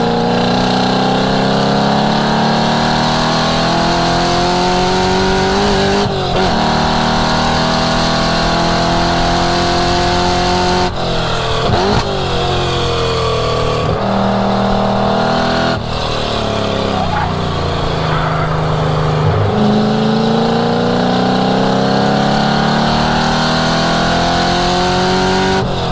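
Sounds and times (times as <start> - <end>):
car engine accelerating: 0.0 - 25.9.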